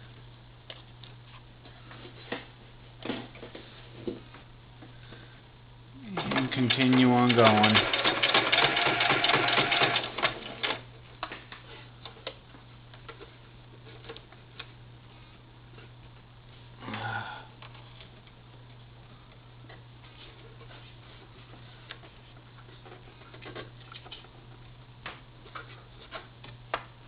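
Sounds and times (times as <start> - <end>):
steady low hum: 0.0 - 27.0
sewing machine clattering: 6.2 - 10.8.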